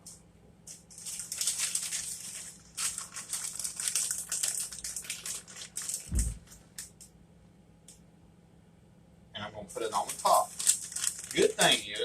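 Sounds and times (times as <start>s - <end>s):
cheese packaging crinkling: 0.7s - 6.9s, 9.9s - 12.0s.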